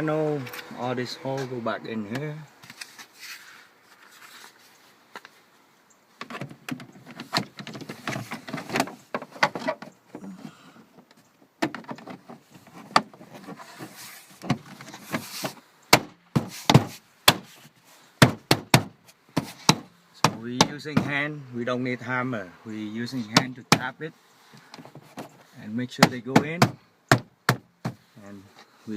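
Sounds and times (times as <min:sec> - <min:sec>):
plastic trim panel rattling: 0:06.2 - 0:10.0.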